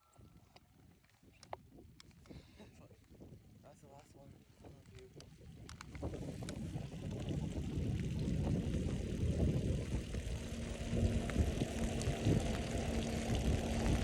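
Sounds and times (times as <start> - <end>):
wind rushing over microphone: 2.7 - 14.0
faint steady hum: 6.0 - 14.0.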